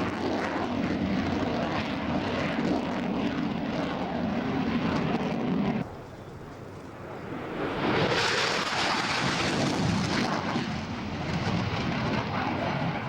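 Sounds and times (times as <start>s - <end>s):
jet passing: 0.0s - 13.0s.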